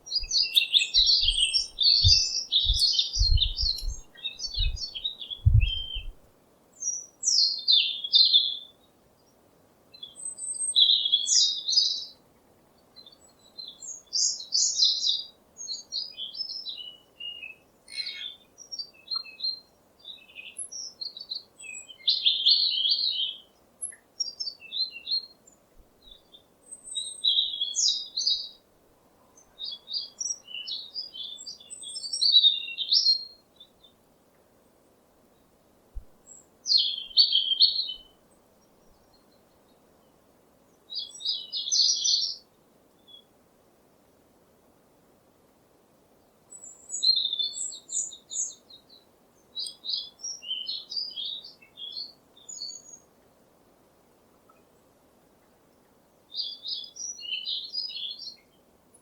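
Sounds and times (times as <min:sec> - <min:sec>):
songbirds chirping: 0:00.0 - 0:59.0
low thumps: 0:02.0 - 0:06.2.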